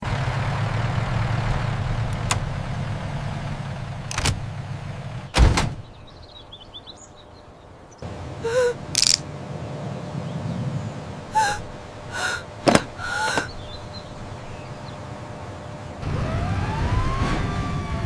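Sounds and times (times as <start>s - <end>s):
vehicle engine rumbling: 0.0s - 18.0s
heavy door slam: 5.4s - 5.8s.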